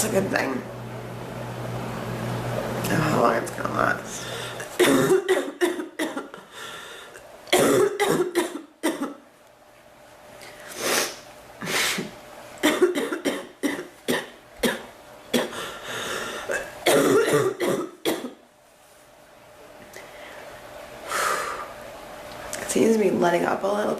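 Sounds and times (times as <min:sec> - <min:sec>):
woman breathing in: 0:04.2 - 0:04.7, 0:06.4 - 0:07.2, 0:15.5 - 0:16.5, 0:20.0 - 0:21.8
woman coughing: 0:04.6 - 0:06.5, 0:07.5 - 0:09.2, 0:11.6 - 0:15.7, 0:16.4 - 0:18.4.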